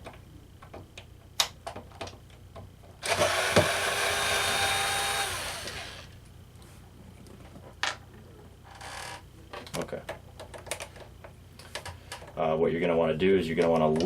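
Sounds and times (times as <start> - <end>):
electric screwdriver motor whine: 3.0 - 6.2.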